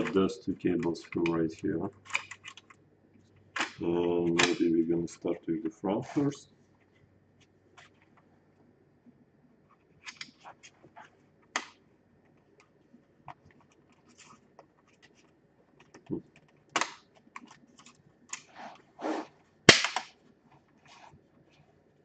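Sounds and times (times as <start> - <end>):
plastic parts clicking and scraping: 0.0 - 4.6, 10.0 - 10.8, 12.6 - 18.8.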